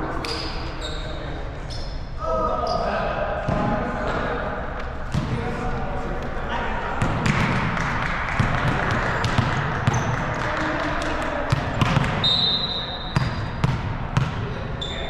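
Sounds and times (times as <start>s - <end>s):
background chatter: 0.0s - 15.0s
volleyball being hit and bouncing: 3.4s - 5.5s, 7.0s - 12.3s, 13.1s - 14.6s.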